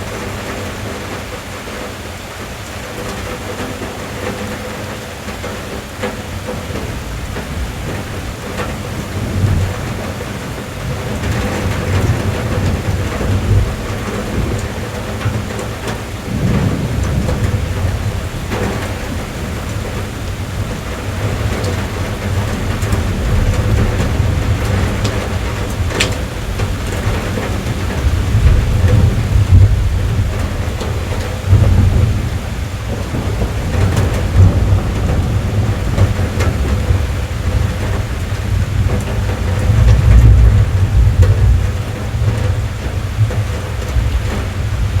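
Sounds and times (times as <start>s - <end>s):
rain drumming on car roof: 0.0s - 45.0s
single raindrop ticks: 24.0s - 27.5s.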